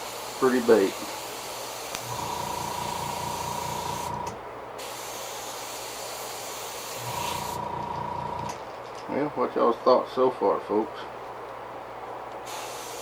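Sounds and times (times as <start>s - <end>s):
airbrush hissing: 0.0s - 7.7s, 12.4s - 13.0s.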